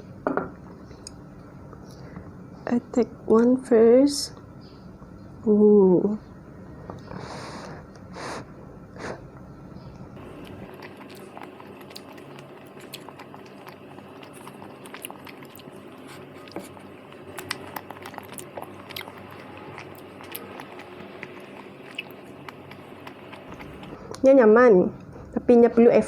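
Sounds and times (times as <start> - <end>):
person chewing rice cake: 10.2 - 24.2.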